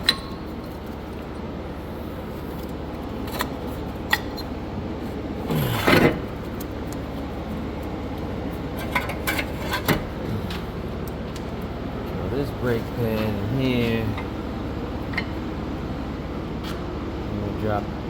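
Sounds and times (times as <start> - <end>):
low shop hum: 0.0 - 18.0
metal scrape: 5.5 - 6.3.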